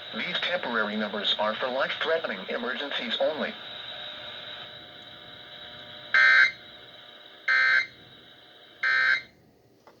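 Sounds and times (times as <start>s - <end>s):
buzzy digital data tones: 6.1s - 6.6s, 7.5s - 8.0s.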